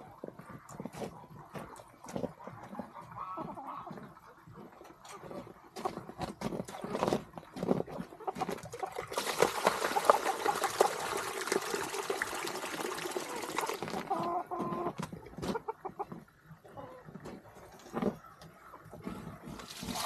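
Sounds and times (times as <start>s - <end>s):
fowl clucking: 2.9s - 3.9s
water pouring: 5.3s - 18.2s, 18.9s - 20.0s.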